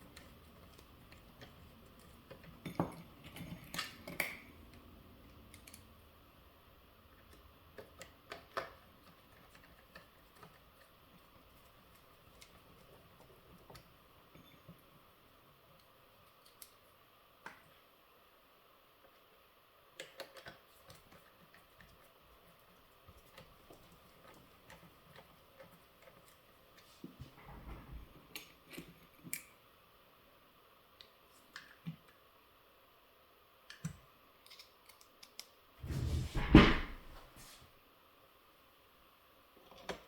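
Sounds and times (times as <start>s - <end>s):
small parts clicking and tapping: 0.0s - 6.0s, 7.1s - 15.0s, 15.7s - 17.8s, 19.9s - 26.8s, 33.6s - 35.6s.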